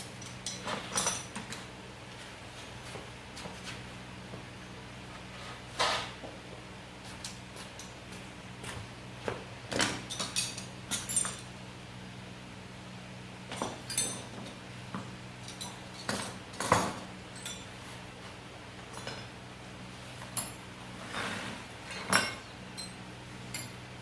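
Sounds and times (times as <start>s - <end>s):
light metallic clicks and clinks: 0.0s - 1.7s, 10.1s - 11.5s, 13.5s - 14.6s, 15.4s - 17.7s, 22.0s - 23.8s
steady low hum: 0.0s - 24.0s.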